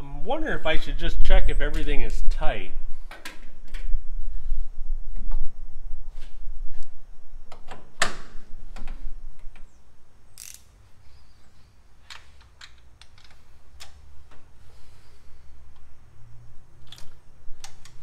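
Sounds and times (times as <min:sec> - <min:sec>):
socket wrench metallic clicks: 0:10.4 - 0:10.7.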